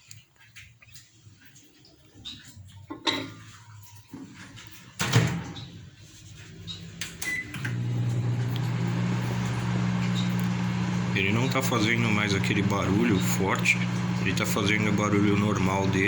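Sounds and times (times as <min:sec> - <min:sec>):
microwave oven humming: 0:06.6 - 0:16.0
microwave beep: 0:07.0 - 0:16.0.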